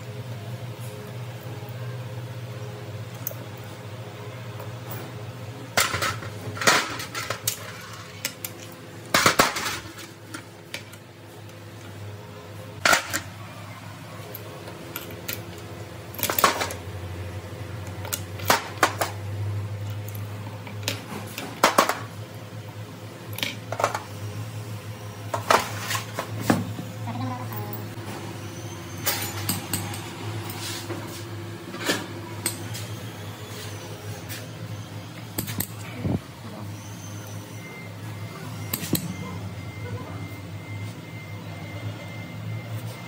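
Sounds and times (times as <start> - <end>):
metal parts clinking and knocking: 14.3 - 16.8, 35.3 - 35.9.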